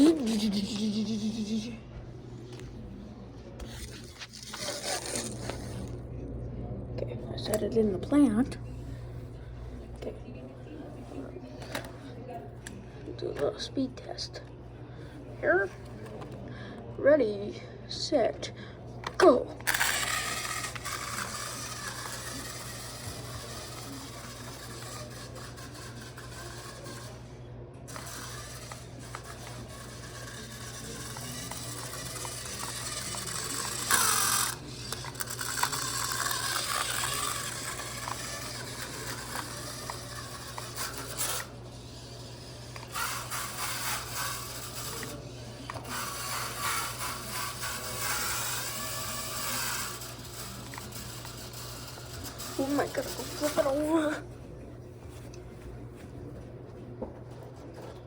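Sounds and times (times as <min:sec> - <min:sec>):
rc car motor whirring: 0:00.0 - 0:01.8, 0:03.6 - 0:06.0, 0:19.0 - 0:27.3, 0:27.9 - 0:54.3.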